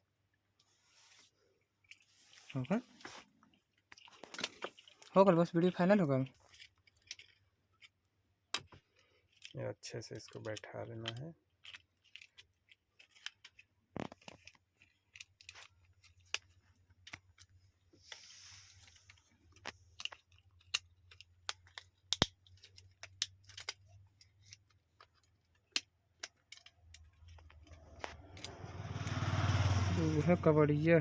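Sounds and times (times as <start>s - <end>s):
soft rustle: 0.6s - 7.3s, 17.6s - 19.9s
plastic parts clicking and tapping: 3.5s - 17.6s, 18.8s - 28.6s.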